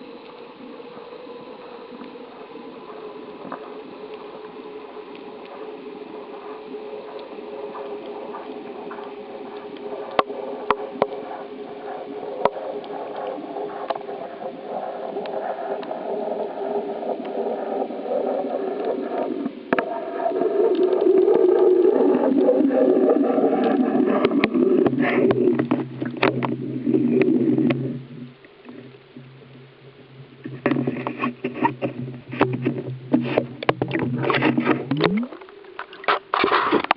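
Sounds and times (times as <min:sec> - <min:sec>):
water gurgling around kayak: 0:00.0 - 0:36.9
sharp clicks and knocks: 0:30.5 - 0:36.9.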